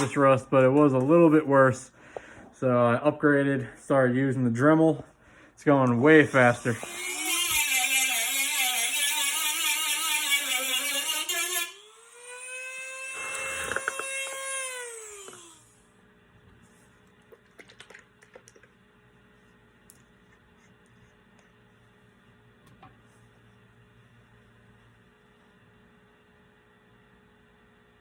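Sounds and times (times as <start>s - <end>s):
rotary tool grinding metal: 6.3s - 15.7s.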